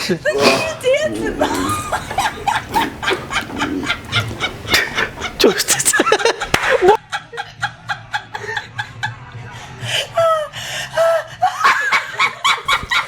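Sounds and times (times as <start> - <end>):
squeals of laughter: 0.3 - 7.0
people laughing and giggling: 0.9 - 13.0.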